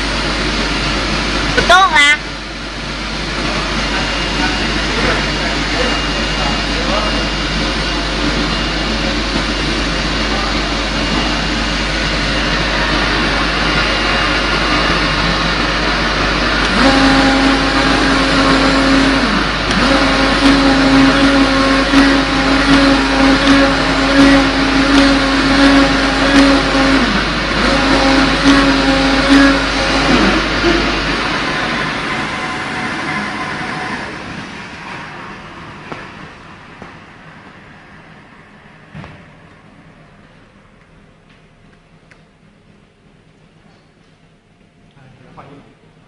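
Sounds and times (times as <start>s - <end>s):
machine rush: 3.0s - 36.7s.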